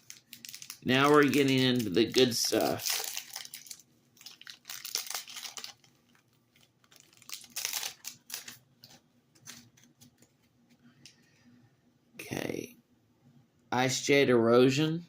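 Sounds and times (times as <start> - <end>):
cards and packaging rustling: 0.0 - 10.8.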